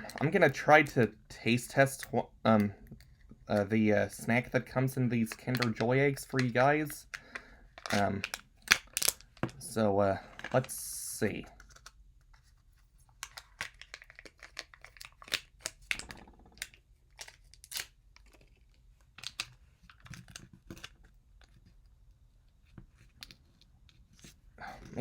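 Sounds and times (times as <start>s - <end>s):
foil packaging crinkling: 13.2s - 18.6s.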